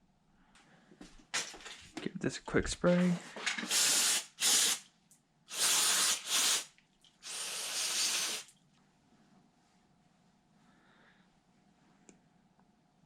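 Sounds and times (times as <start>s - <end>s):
aerosol can spraying: 3.6s - 4.8s, 5.5s - 8.5s.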